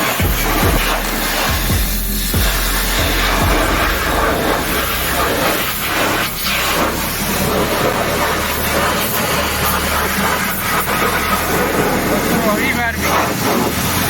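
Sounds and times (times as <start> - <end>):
pressure washer spraying water: 0.0 - 14.0.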